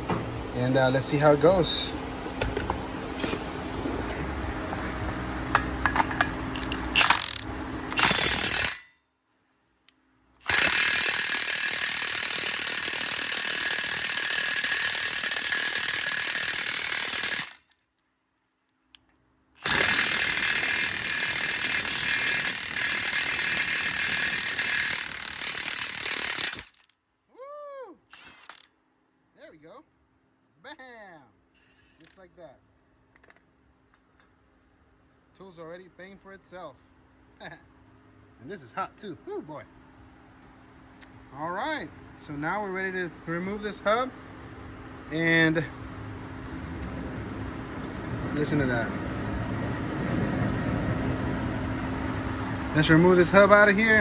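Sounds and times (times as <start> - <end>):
impact wrench hammering: 5.5 - 8.9, 19.6 - 26.7.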